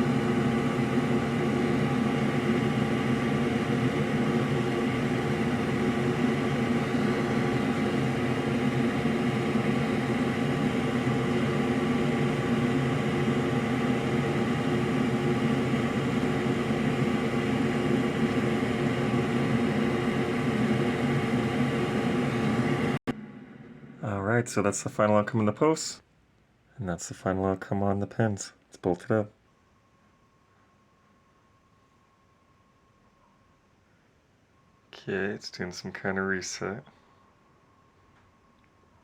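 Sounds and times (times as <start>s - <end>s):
electric blower motor humming: 0.0s - 24.0s.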